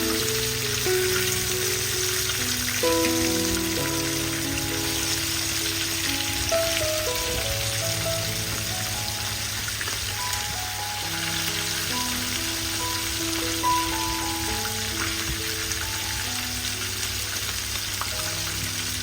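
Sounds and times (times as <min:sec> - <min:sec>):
chicken frying in hot oil: 0:00.0 - 0:19.0
slow background music: 0:00.0 - 0:19.0.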